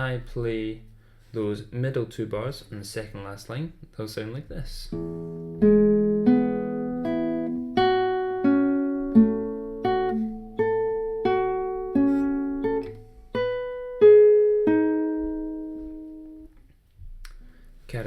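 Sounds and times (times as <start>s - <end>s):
guitar plucked notes: 4.9s - 16.6s.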